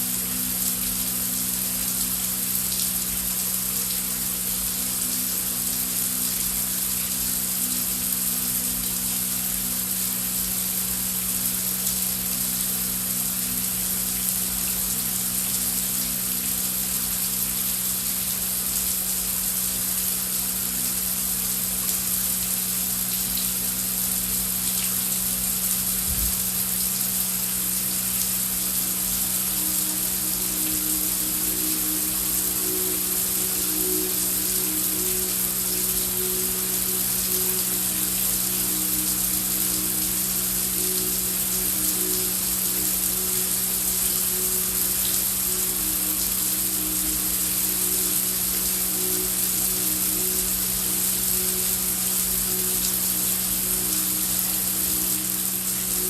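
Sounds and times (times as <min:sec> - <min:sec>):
heavy rain: 0:00.0 - 0:56.0
low background drone: 0:27.6 - 0:56.0.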